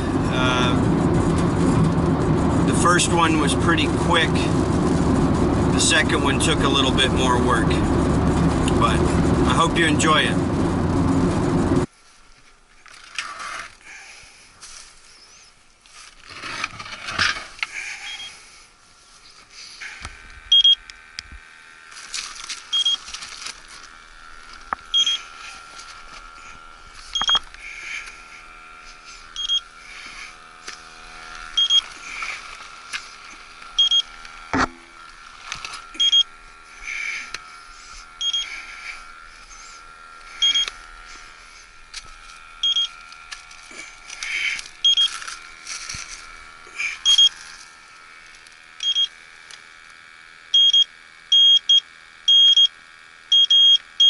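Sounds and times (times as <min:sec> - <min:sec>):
leak detector beeping: 0:18.0 - 0:18.4, 0:20.5 - 0:20.9, 0:22.7 - 0:23.2, 0:24.4 - 0:41.1, 0:42.6 - 0:43.4, 0:44.0 - 0:45.9, 0:46.8 - 0:47.6, 0:48.8 - 0:49.2, 0:50.5 - 0:54.0.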